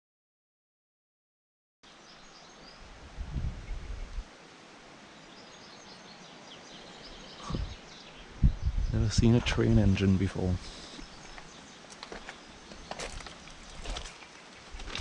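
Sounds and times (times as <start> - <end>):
small birds chirping: 1.8 - 2.9, 5.0 - 15.0
open air hiss: 1.8 - 15.0
wind rumble on microphone: 2.8 - 4.3, 7.4 - 10.7.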